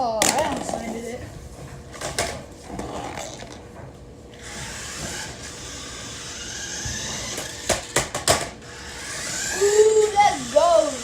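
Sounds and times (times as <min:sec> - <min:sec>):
toy car motor whirring: 0:04.4 - 0:11.0.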